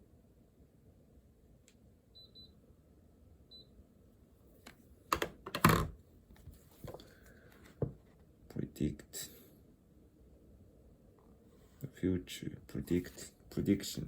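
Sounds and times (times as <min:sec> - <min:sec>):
clicks and knocks at a desk: 0:05.1 - 0:08.1.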